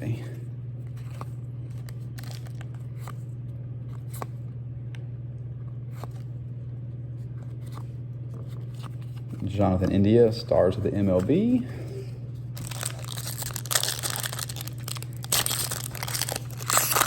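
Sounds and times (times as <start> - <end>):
steady low hum: 0.0 - 17.0
cards being flipped through: 0.9 - 3.3, 12.5 - 17.0.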